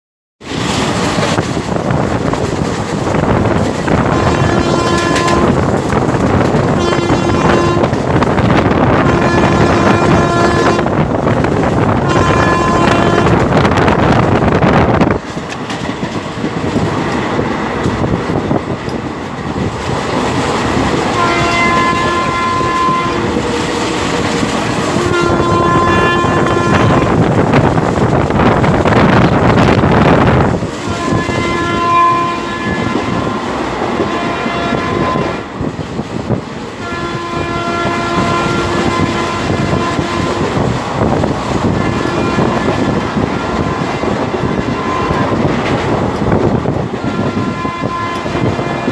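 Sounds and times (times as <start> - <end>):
train running noise and rail clatter: 0.4 - 48.9
locomotive horns honking: 3.9 - 5.7, 6.7 - 8.0, 8.7 - 11.0, 11.9 - 13.9, 21.1 - 23.6, 24.8 - 27.3, 30.8 - 35.4, 36.8 - 40.7, 41.6 - 45.6, 47.0 - 48.9.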